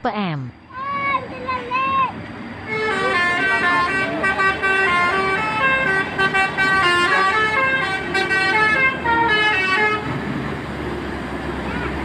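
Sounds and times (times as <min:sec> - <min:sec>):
low rumble of vehicles: 0:00.0 - 0:12.0
bus horn playing a tune: 0:02.6 - 0:10.3.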